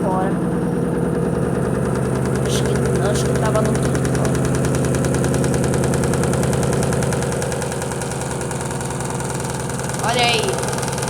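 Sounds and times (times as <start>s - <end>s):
washing machine spinning hum: 0.0s - 11.0s.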